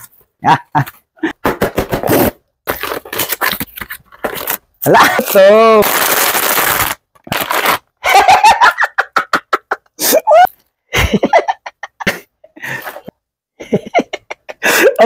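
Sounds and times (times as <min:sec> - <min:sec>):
person laughing: 0:00.4 - 0:01.4, 0:04.8 - 0:05.8, 0:08.0 - 0:15.0.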